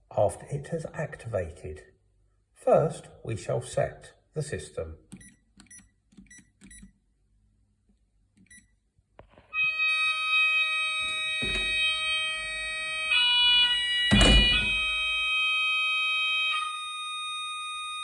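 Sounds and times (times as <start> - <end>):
alarm keypad beeping: 9.6 - 17.0
steady electronic exit tone: 9.6 - 18.0
dull thumps: 11.1 - 12.7.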